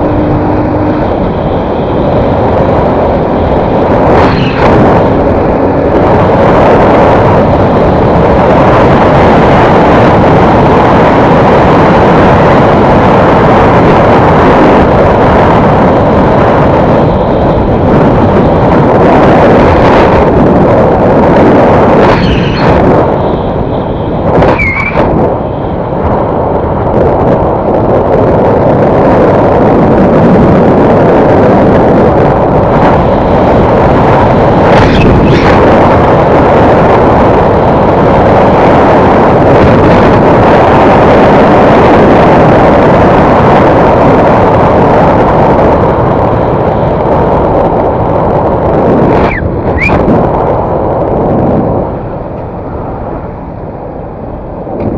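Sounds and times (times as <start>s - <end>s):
vehicle engine and road rumble: 0.0s - 54.9s
short high squeak: 24.5s - 25.0s, 49.3s - 50.0s.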